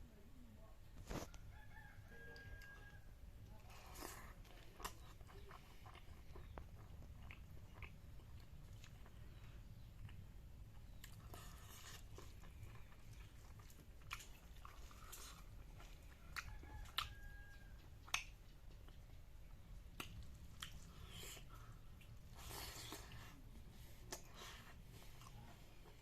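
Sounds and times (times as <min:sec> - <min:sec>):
person chewing wetly: 0:03.5 - 0:26.0
mouth clicks and smacks: 0:17.8 - 0:20.9.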